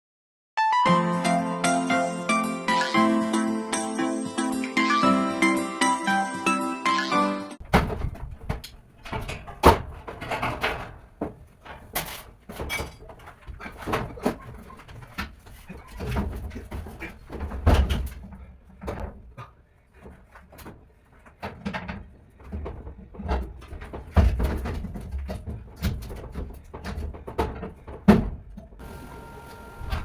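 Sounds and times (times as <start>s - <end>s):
knocks thumps and clatter: 7.6s - 28.9s.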